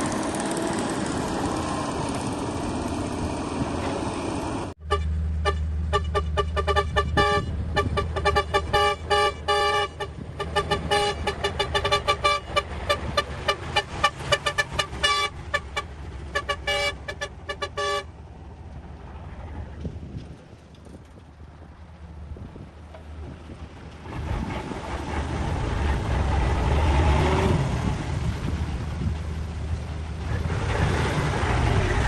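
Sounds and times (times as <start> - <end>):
low engine hum: 0.0 - 32.0
vehicle horn short toots: 4.8 - 18.1.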